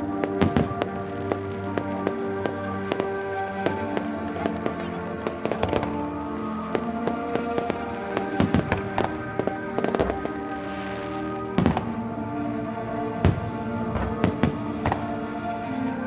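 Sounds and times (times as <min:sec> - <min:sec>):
fireworks bursting: 0:00.0 - 0:16.0
music: 0:00.0 - 0:16.0.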